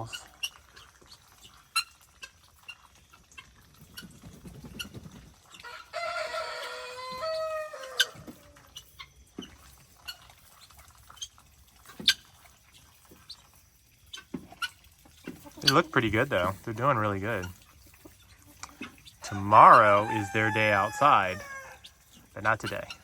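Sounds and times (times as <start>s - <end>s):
rooster crowing: 5.7s - 8.3s, 19.2s - 21.8s.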